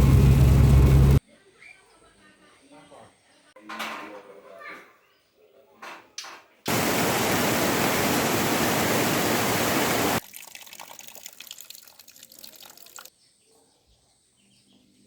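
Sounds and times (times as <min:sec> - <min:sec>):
loud rushing water: 0:06.7 - 0:10.2.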